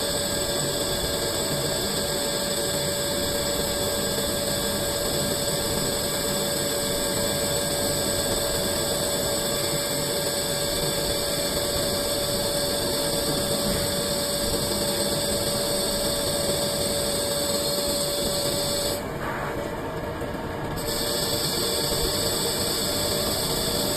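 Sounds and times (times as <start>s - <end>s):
lathe running with mechanical whine: 0.0s - 23.9s
metal cutting noise: 0.0s - 23.9s.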